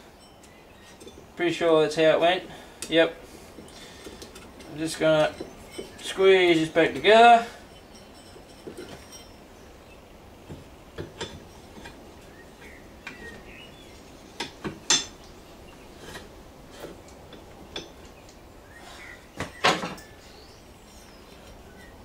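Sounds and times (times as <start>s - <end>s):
metal parts clinking and knocking: 7.6s - 9.5s, 10.5s - 12.0s.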